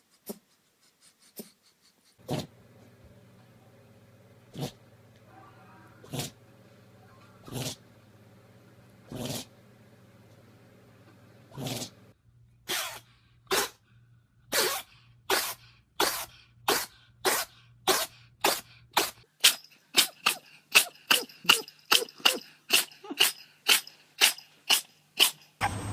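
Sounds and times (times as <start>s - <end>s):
animal sneezing: 2.2s - 2.6s, 4.5s - 4.8s, 5.8s - 6.4s, 7.3s - 7.9s, 9.1s - 9.6s, 11.5s - 12.0s, 12.7s - 13.8s, 14.5s - 19.2s, 20.0s - 25.8s.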